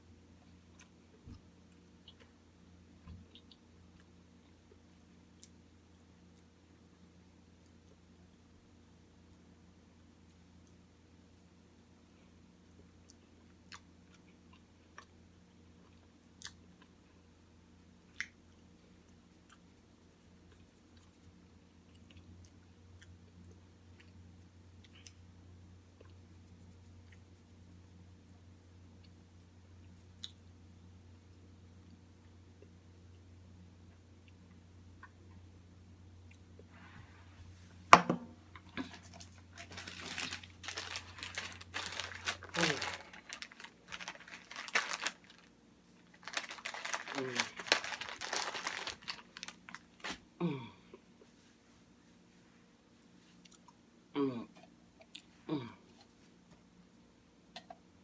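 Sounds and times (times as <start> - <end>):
low steady hum: 0.0 - 58.0
mouth chewing clicks and smacks: 3.1 - 5.6, 54.6 - 55.3, 57.5 - 57.8
packaging crinkling: 38.8 - 50.2.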